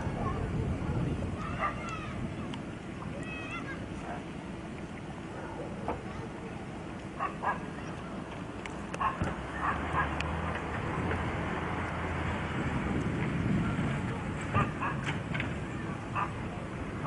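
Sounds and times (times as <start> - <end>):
dog yipping: 1.5 - 1.9, 7.2 - 7.7, 9.0 - 10.2.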